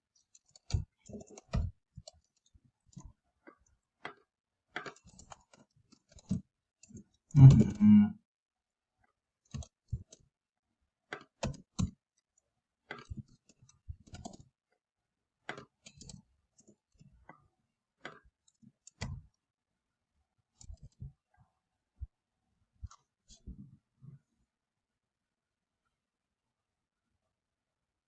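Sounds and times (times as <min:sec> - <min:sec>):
computer keyboard typing: 0:00.2 - 0:03.1, 0:04.8 - 0:07.0, 0:09.5 - 0:10.2, 0:12.9 - 0:14.4, 0:15.5 - 0:16.2.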